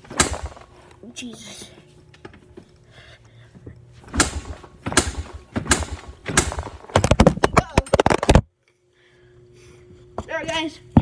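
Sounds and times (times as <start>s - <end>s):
sharp clicks and knocks: 4.1s - 8.5s.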